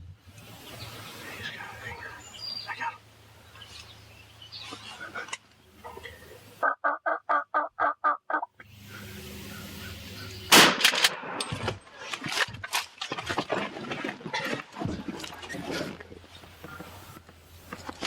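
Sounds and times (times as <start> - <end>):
shotgun blast: 10.5 - 11.4.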